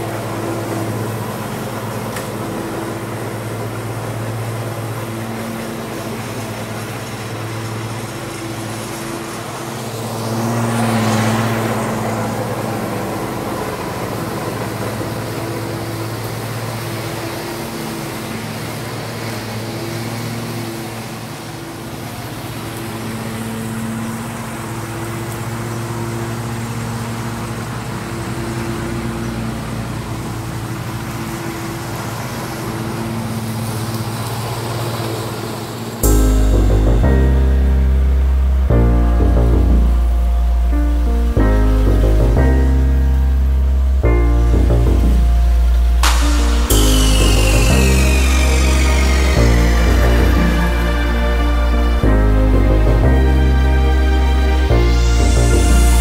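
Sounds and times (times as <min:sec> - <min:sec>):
lawn mower engine running: 0:00.0 - 0:56.0.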